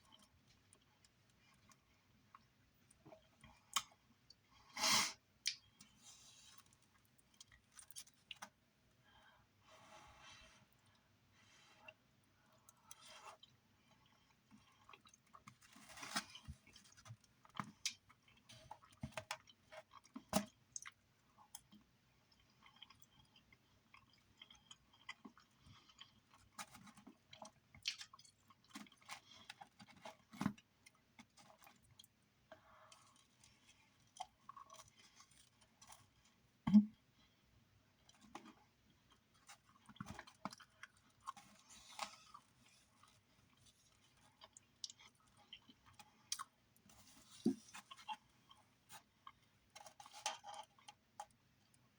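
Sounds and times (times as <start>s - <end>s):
person chewing food: 11.9s - 51.9s.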